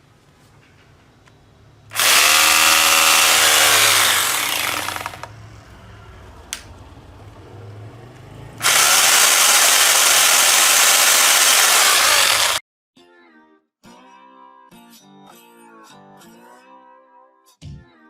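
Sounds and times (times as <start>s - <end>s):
rotary hammer drill spinning: 1.9s - 5.4s, 8.6s - 12.6s.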